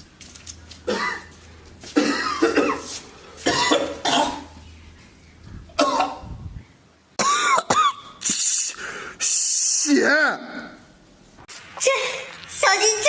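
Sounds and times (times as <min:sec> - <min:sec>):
person coughing hard: 0:00.9 - 0:01.3, 0:02.0 - 0:04.6, 0:05.8 - 0:06.4, 0:07.2 - 0:08.1.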